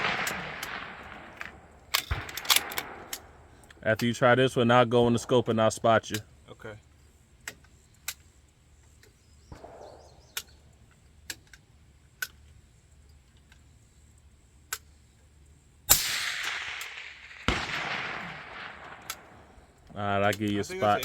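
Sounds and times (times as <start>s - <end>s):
loud rifle shots with echo: 0.0s - 3.6s, 9.5s - 10.4s, 15.9s - 19.9s
faint distant rifle shots: 0.0s - 3.7s, 9.4s - 10.8s, 15.9s - 20.0s.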